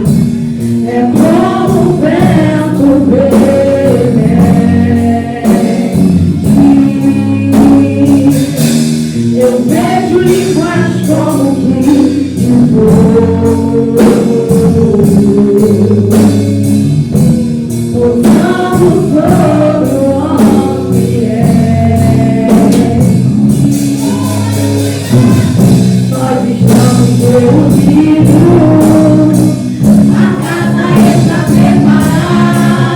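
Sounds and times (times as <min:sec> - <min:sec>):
voices singing slow melody: 0:00.0 - 0:16.4, 0:17.9 - 0:32.9
sustained keyboard and bass: 0:00.0 - 0:32.9.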